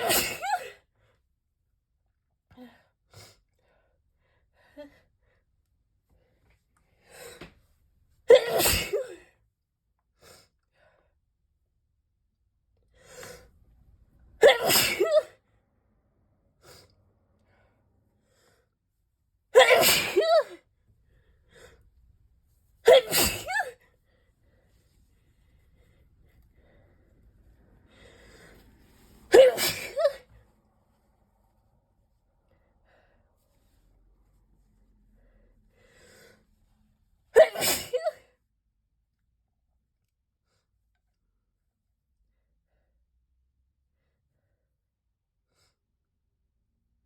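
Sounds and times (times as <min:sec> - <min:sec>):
person sneezing: 0:00.0 - 0:00.8, 0:08.3 - 0:09.2, 0:14.4 - 0:15.4, 0:19.6 - 0:20.6, 0:22.8 - 0:23.8, 0:29.3 - 0:30.2, 0:37.4 - 0:38.2.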